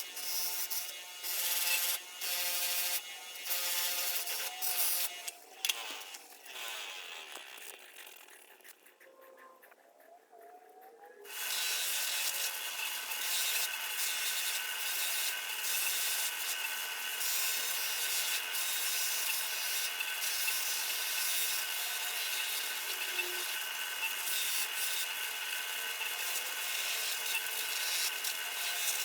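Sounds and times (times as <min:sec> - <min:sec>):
power buffing wheel whining: 0:11.3 - 0:29.0.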